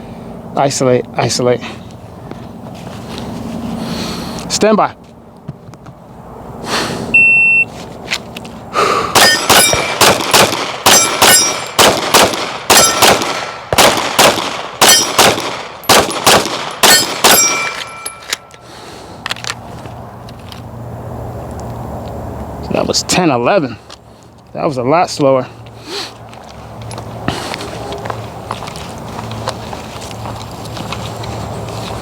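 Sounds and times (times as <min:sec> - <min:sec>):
shot timer beep: 0:07.2 - 0:07.7
rapid pistol shots: 0:09.1 - 0:17.7
steel targets ringing: 0:09.2 - 0:10.0, 0:10.8 - 0:11.8, 0:12.7 - 0:13.6, 0:14.8 - 0:16.2, 0:16.8 - 0:18.6.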